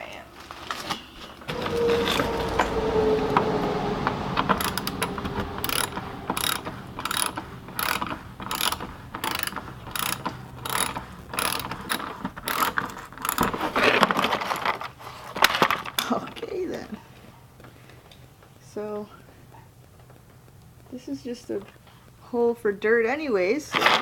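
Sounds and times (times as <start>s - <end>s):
ratchet wrench clicking: 6.4s - 13.5s.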